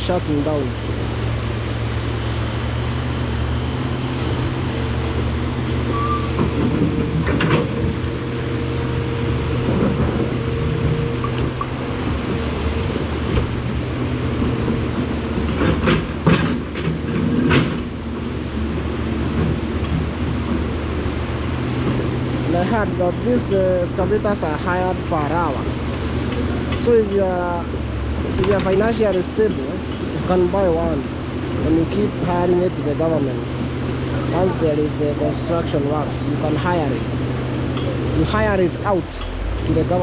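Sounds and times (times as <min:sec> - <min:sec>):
excavator diesel engine running: 0:00.0 - 0:40.0
metal clanks and knocks: 0:06.2 - 0:08.2, 0:14.4 - 0:18.3.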